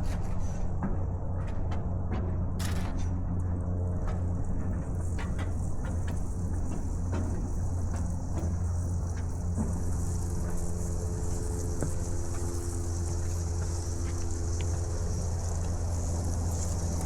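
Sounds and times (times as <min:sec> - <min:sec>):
steady low hum: 0:00.0 - 0:17.0
ice ticking and pinging: 0:05.9 - 0:17.0.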